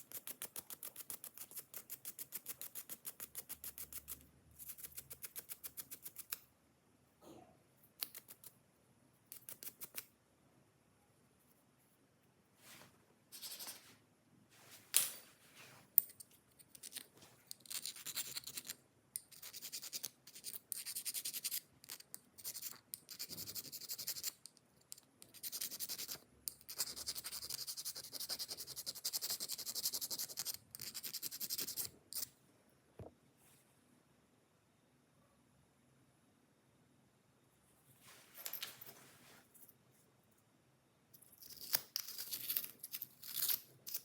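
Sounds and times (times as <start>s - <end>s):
scratching and scraping: 41.2s - 44.0s.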